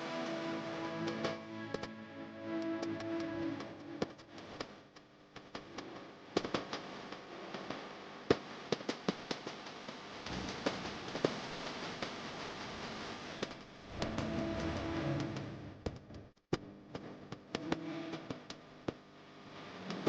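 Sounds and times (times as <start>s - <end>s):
background music: 0.0s - 4.6s, 13.9s - 15.8s
low hiss: 0.0s - 20.0s
sharp pops and crackles: 2.8s - 20.0s.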